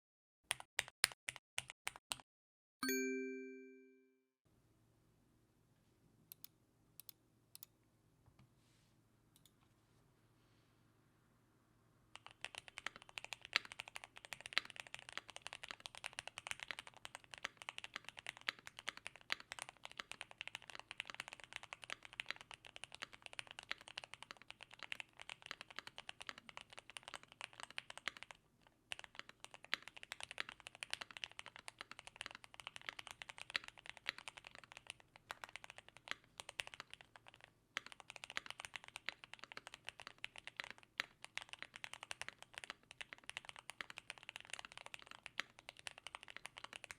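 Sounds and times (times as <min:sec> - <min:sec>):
mechanical keyboard typing: 0:12.2 - 0:46.9.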